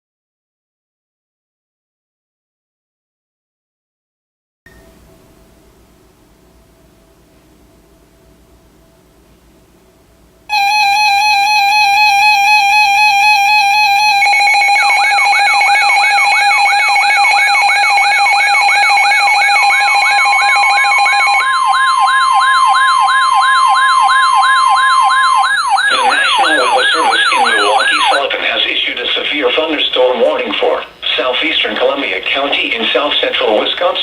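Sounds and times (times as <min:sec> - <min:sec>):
fast siren-like sweep: 0:10.5 - 0:28.2
steady electronic tone: 0:10.5 - 0:28.3
warbling electronic alert tone: 0:10.5 - 0:28.3
steady higher tone: 0:10.5 - 0:28.4.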